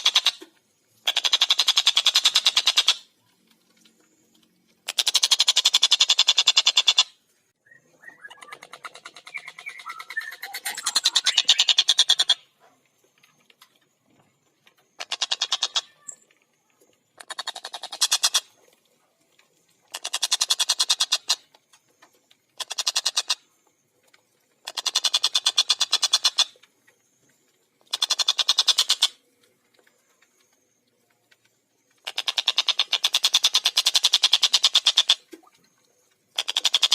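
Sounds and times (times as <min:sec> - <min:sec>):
kingfisher cackling calls: 0:08.0 - 0:12.5, 0:15.0 - 0:16.0.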